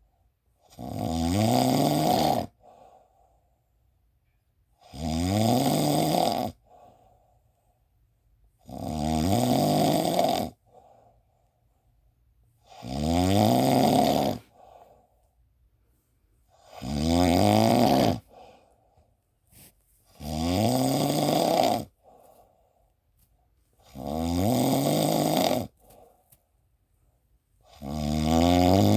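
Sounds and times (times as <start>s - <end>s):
person snoring: 0.7s - 2.6s, 4.8s - 6.6s, 8.6s - 10.6s, 12.6s - 14.7s, 16.6s - 18.5s, 19.6s - 22.1s, 23.8s - 25.8s, 27.7s - 28.9s
soft breath: 2.6s - 3.8s, 6.6s - 8.0s, 14.4s - 16.6s, 18.2s - 20.2s, 21.9s - 23.6s, 25.7s - 27.3s.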